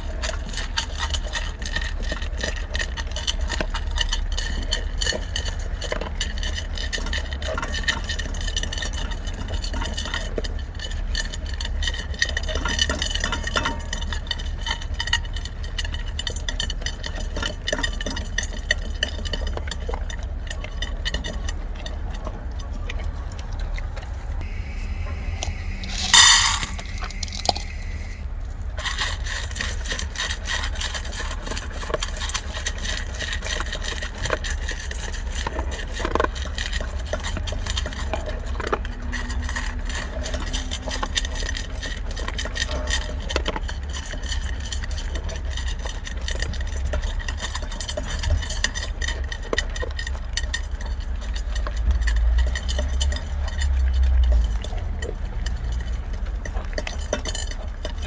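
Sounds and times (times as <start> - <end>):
dog crunching kibble: 0.0 - 58.0
low rumble: 24.0 - 30.0
dry food pouring rattle: 24.5 - 28.2.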